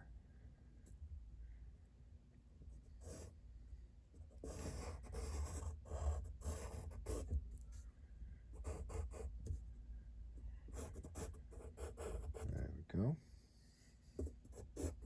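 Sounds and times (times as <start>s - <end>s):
drawing tool scratching paper: 4.4s - 7.4s, 14.2s - 15.0s.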